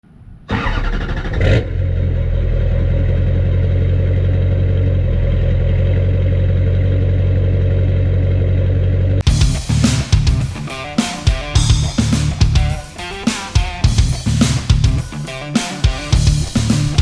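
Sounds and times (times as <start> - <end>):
diesel engine idling: 1.4 - 10.9.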